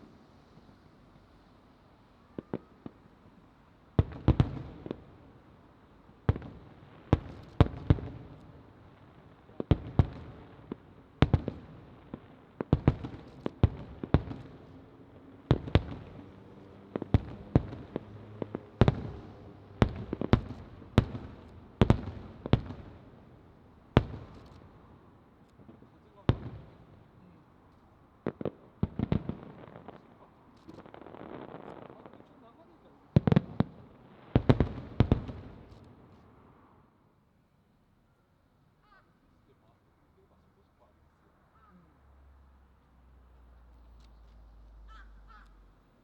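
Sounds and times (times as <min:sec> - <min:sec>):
faint firework pops: 0:02.3 - 0:03.4, 0:04.0 - 0:05.3, 0:06.2 - 0:23.2, 0:23.9 - 0:36.4
firework bangs echoing: 0:04.0 - 0:05.3, 0:06.2 - 0:27.2, 0:28.2 - 0:36.1.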